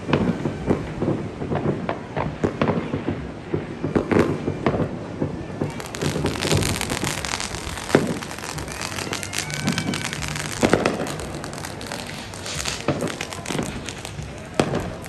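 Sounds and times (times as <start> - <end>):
fireworks crackling pops: 0.0 - 15.0
loud fireworks bangs: 0.0 - 15.0.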